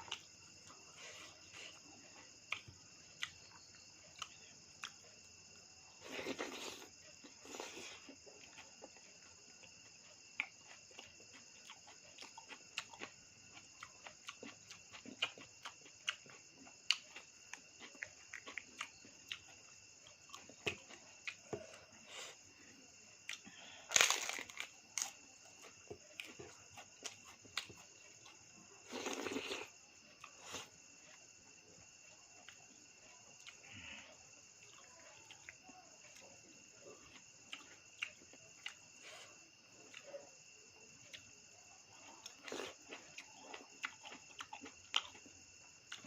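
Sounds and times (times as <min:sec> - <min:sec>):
crickets chirring: 0:00.0 - 0:46.0
chewing clicks and smacks: 0:08.1 - 0:21.5, 0:23.2 - 0:28.4, 0:37.0 - 0:38.9, 0:42.1 - 0:46.0.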